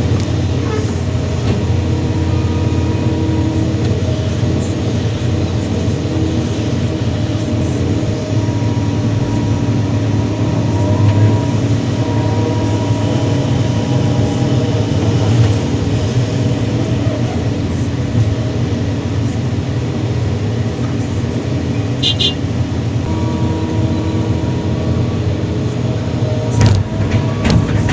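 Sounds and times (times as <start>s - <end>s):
excavator diesel engine: 0.0s - 27.9s
faint hydraulic whine: 23.1s - 27.9s.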